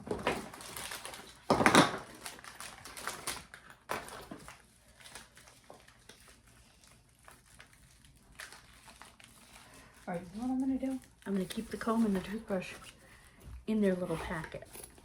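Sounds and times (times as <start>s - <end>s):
small items clattering onto surface: 0.0s - 4.6s.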